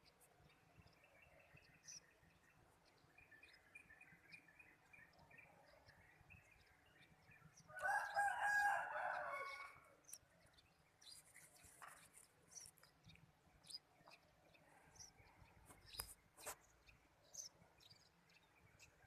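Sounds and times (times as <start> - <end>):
small birds chirping: 0.0 - 19.0
rooster crowing: 7.7 - 9.8.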